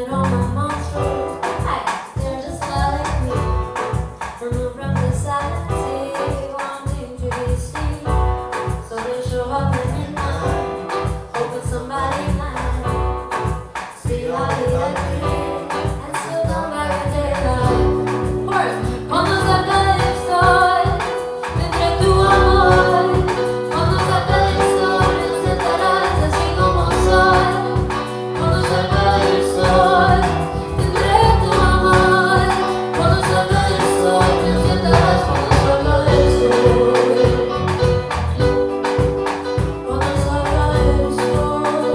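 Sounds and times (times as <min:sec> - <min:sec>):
live band with drums and bass: 0:00.0 - 0:41.9
person singing: 0:14.0 - 0:41.9.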